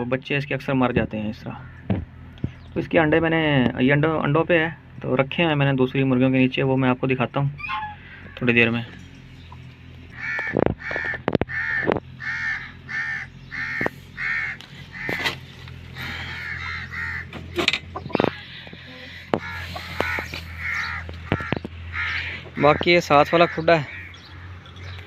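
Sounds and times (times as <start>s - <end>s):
crows cawing: 7.6s - 8.5s, 10.1s - 25.0s
sharp knocks and clicks: 10.3s - 12.1s.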